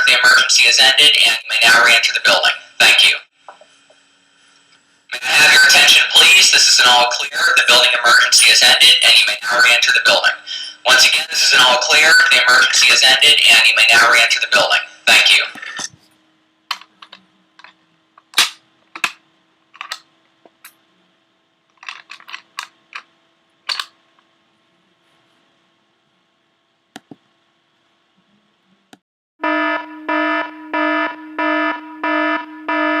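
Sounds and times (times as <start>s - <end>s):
faint steady hum: 0.0s - 33.0s
sharp clicks and taps: 27.0s - 27.2s
buzzy fire alarm horn pulsing: 29.4s - 33.0s.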